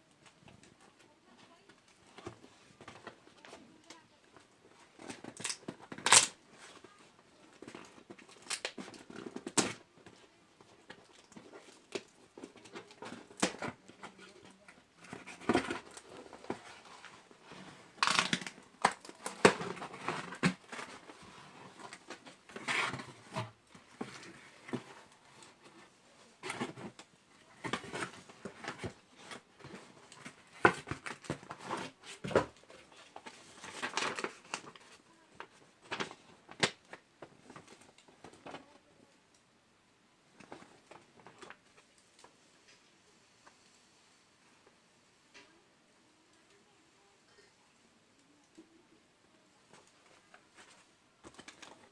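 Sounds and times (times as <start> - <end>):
packaging rustling: 15.0 - 25.8, 27.6 - 36.9.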